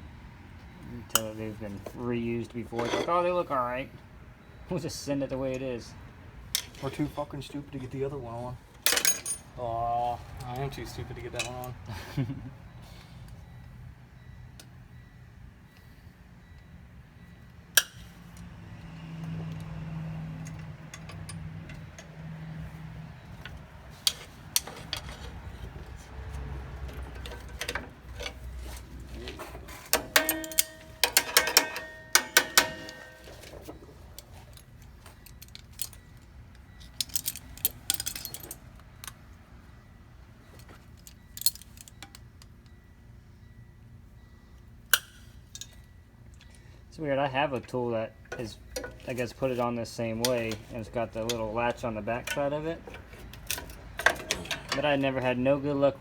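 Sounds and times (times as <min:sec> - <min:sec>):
metal tools clinking and clanking: 0:01.1 - 0:03.5, 0:06.5 - 0:08.2, 0:08.8 - 0:11.8, 0:20.4 - 0:22.2, 0:23.2 - 0:39.2, 0:40.4 - 0:42.5, 0:47.6 - 0:55.8.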